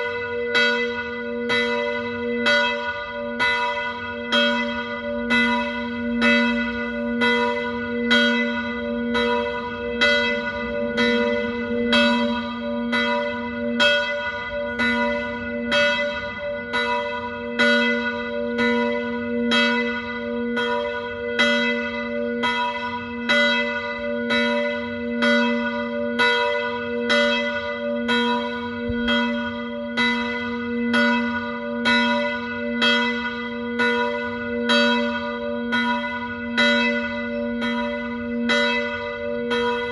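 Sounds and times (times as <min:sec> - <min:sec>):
church bells ringing in a peal: 0:00.0 - 0:39.9.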